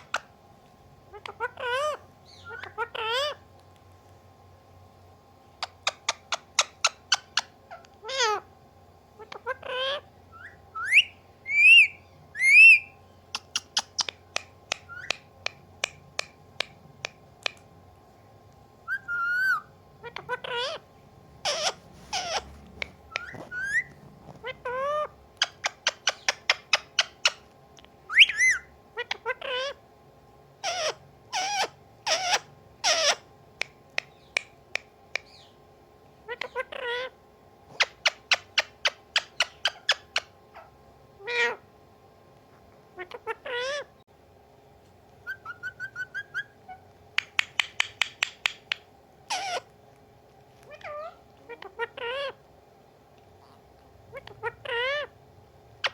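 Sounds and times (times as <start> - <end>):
parrot meowing: 1.1 - 3.4, 7.7 - 8.5, 18.9 - 20.8, 21.4 - 25.1, 30.6 - 33.2, 43.0 - 43.9, 49.3 - 49.7, 50.7 - 52.4, 53.4 - 55.1
parrot whistling: 9.4 - 14.1, 18.8 - 20.8, 23.1 - 27.4, 28.1 - 28.7, 45.2 - 46.7
parrot clicking: 13.5 - 17.7, 47.2 - 48.9.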